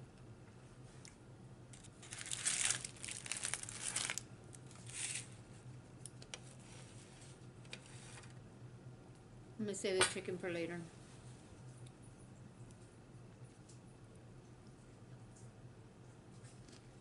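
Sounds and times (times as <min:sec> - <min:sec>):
food wrapper crinkling: 0:01.8 - 0:05.4.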